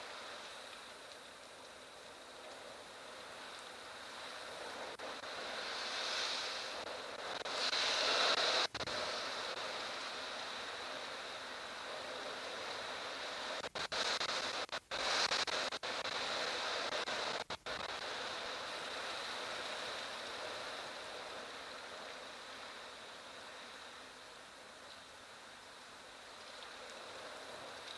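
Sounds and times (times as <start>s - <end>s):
strong wind rushing through grass: 1.0s - 27.9s.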